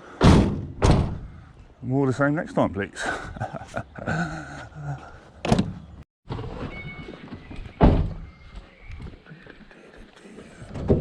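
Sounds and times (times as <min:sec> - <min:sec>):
loud thuds: 0:00.2 - 0:01.4.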